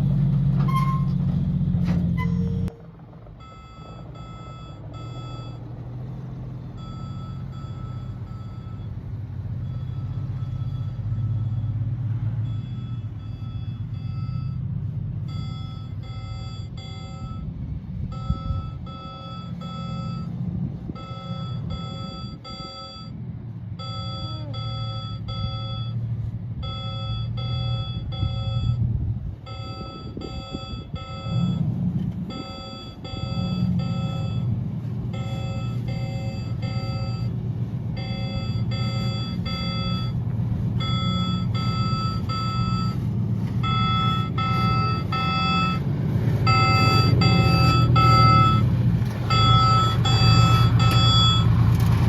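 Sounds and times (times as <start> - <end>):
diesel engine running: 0.0 - 52.0
backup alarm beeping: 3.4 - 5.7, 6.8 - 9.0, 12.4 - 14.6, 15.2 - 17.5, 18.1 - 20.4, 21.0 - 23.2, 23.8 - 26.0, 26.6 - 28.9, 29.5 - 31.7, 32.3 - 34.5, 35.1 - 37.4, 38.0 - 40.2, 40.8 - 51.6.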